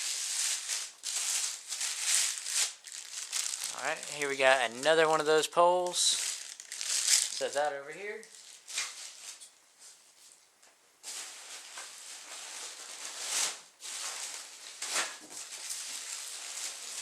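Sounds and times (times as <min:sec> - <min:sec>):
packing peanuts rustling: 0:00.0 - 0:09.4, 0:11.0 - 0:17.0.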